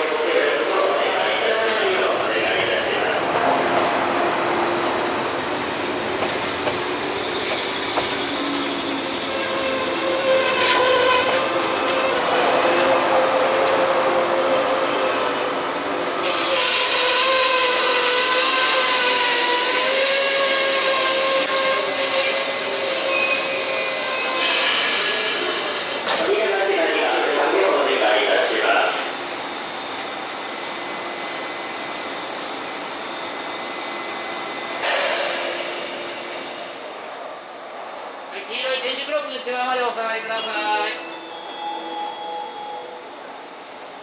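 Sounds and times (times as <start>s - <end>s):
train wheels squealing: 7.0s - 26.0s, 28.7s - 37.5s
high-pitched squeal: 12.2s - 26.0s.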